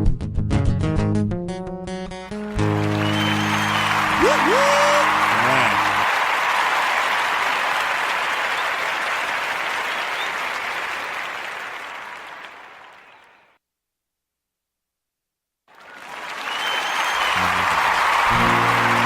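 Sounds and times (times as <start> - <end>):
applause: 2.5 - 13.6, 15.7 - 19.0.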